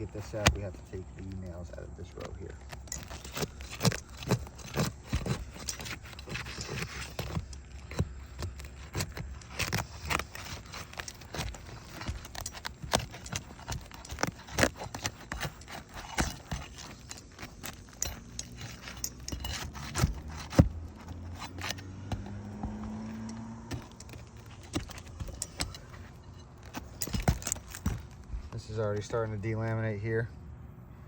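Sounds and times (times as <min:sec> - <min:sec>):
hand tool prying nails: 0:00.0 - 0:28.3.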